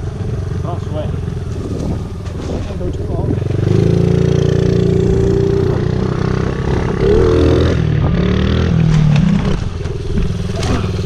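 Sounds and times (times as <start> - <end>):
small motorbike engine revving: 3.3 - 11.0.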